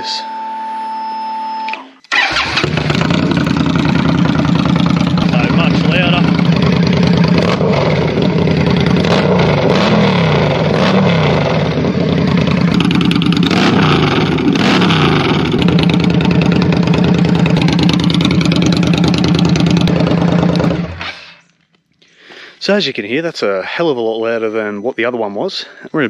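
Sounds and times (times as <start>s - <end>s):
motorcycle engine revving and idling: 2.1s - 21.5s.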